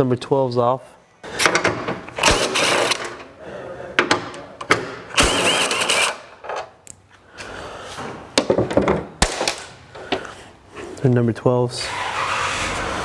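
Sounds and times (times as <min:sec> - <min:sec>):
tools clicking and knocking: 0:04.0 - 0:06.8
harsh burst of noise: 0:11.9 - 0:13.0.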